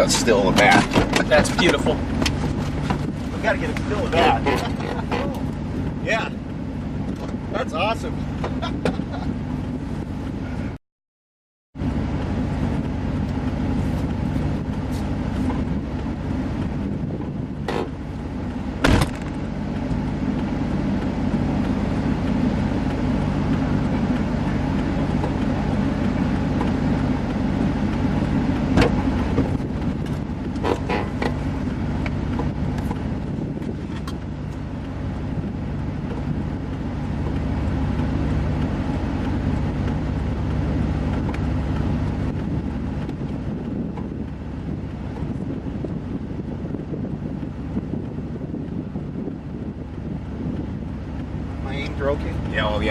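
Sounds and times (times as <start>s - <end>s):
car engine hum: 0.0s - 10.8s, 11.8s - 52.9s
road noise: 0.0s - 10.8s, 11.8s - 52.9s
sharp knocks and clicks: 25.1s - 31.4s.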